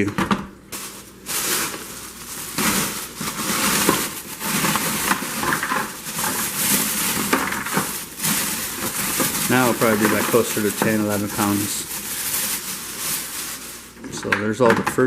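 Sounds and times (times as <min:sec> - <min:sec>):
brittle pieces rattling into bucket: 0:00.8 - 0:14.3.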